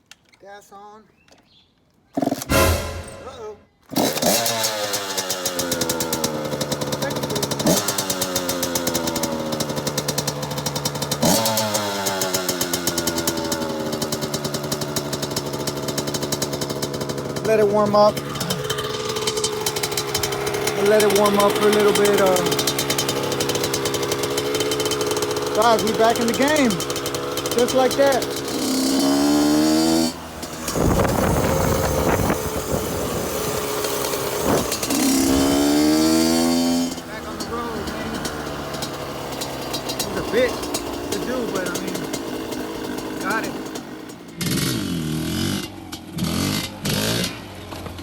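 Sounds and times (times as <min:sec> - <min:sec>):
dirt bike engine revving: 0:02.2 - 0:47.6
wind buffeting microphone: 0:30.6 - 0:33.7, 0:34.3 - 0:35.8.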